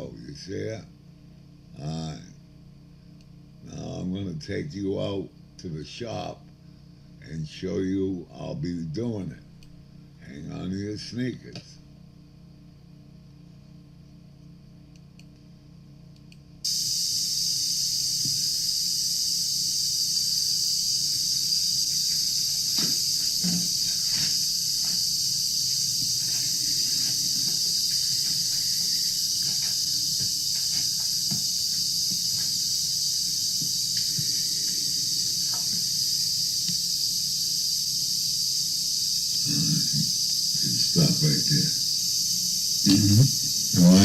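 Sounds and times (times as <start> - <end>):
loud steady high hiss: 16.6 - 44.0.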